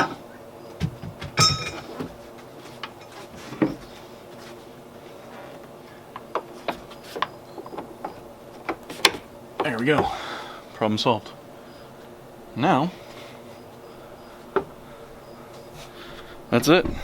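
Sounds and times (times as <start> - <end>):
ringing metallic clank: 1.4 - 1.9.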